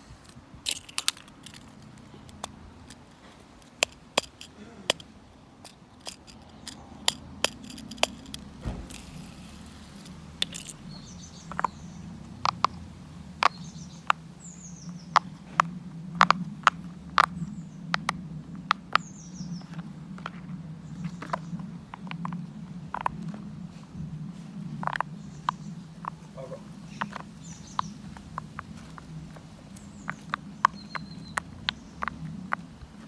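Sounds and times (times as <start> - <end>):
plastic toys clicking: 0.3 - 11.8.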